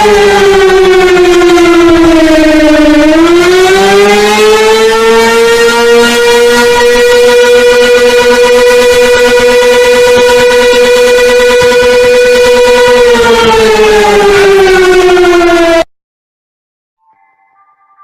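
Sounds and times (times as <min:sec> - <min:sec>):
civil defense siren: 0:00.0 - 0:15.9.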